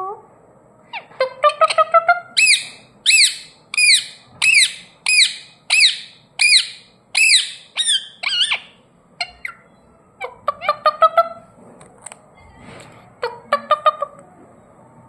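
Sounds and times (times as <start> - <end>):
parrot chirps: 0.9 - 11.4
parrot squawking: 0.9 - 11.5, 13.2 - 14.2.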